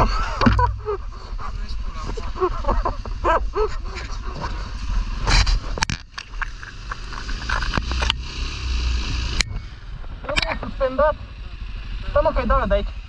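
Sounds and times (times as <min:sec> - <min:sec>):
atv engine idling: 0:00.0 - 0:05.2, 0:06.3 - 0:13.0.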